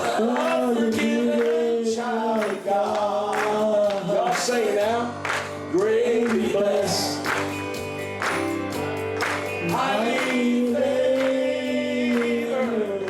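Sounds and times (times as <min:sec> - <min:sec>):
men singing gospel: 0:00.0 - 0:07.4, 0:09.2 - 0:13.0
instrumental accompaniment: 0:04.8 - 0:13.0.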